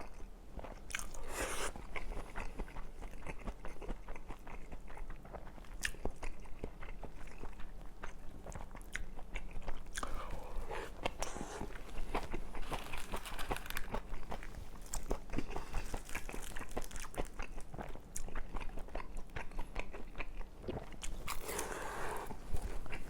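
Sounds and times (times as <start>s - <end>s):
close chewing with mouth clicks: 0.0s - 23.0s
soft crunches: 10.0s - 17.3s, 21.0s - 23.0s.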